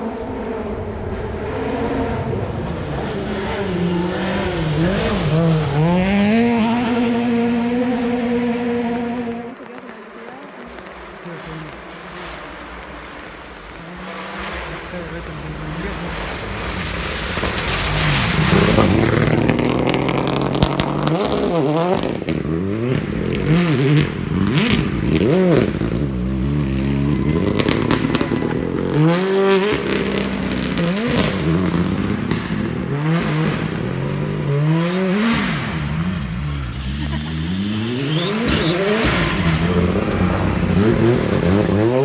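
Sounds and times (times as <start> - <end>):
rally car engine revving: 0.0 - 42.0
exhaust cracks and pops: 8.7 - 42.0.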